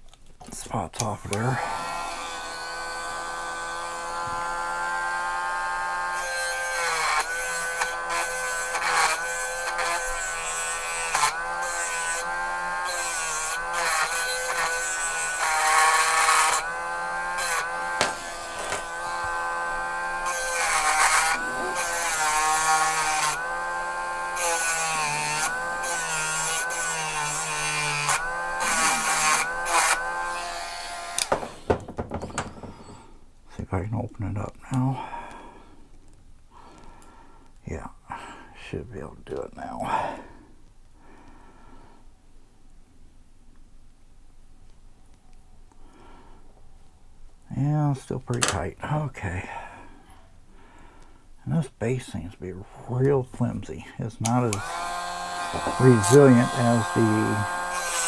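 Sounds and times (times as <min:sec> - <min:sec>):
rotary tool whining: 0:01.3 - 0:33.1, 0:54.2 - 0:58.0
harsh grinding into metal: 0:14.9 - 0:33.1, 0:54.2 - 0:58.0.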